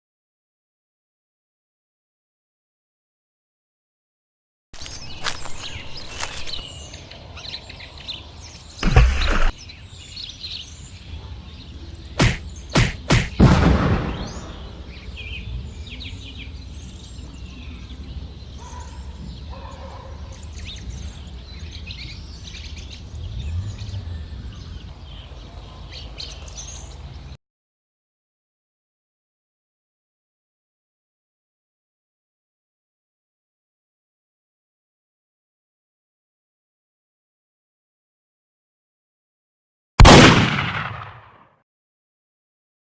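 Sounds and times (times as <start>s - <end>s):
birds chirping: 4.8s - 27.4s
heavy thud: 8.8s - 9.5s, 12.2s - 14.2s
sharp knocks: 8.8s - 9.5s, 12.2s - 13.6s.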